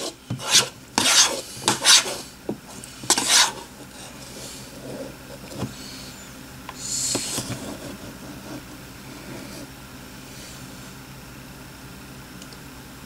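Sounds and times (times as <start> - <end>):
slime being stirred and scraped: 0.0 - 5.7.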